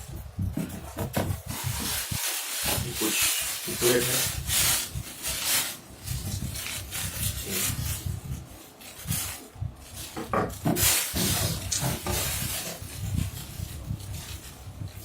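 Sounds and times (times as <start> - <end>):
plastic jars and packaging knocking: 0.4 - 1.9, 10.1 - 12.8.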